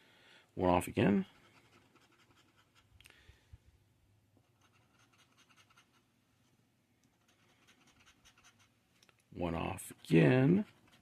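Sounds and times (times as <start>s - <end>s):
scratching scratch-off ticket: 0.8s - 2.9s, 4.4s - 6.1s, 7.1s - 8.8s, 9.4s - 11.0s.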